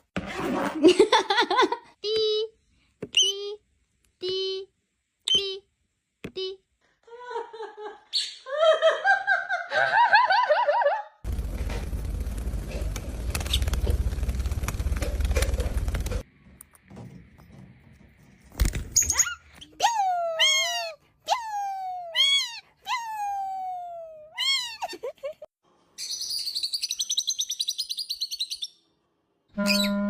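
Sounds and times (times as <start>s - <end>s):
high chirping trill: 29.6s - 30.0s.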